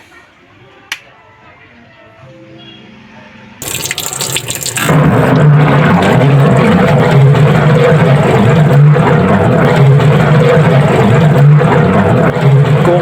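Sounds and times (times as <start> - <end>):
churning water: 3.6 - 13.0
washing machine motor grinding: 3.6 - 13.0.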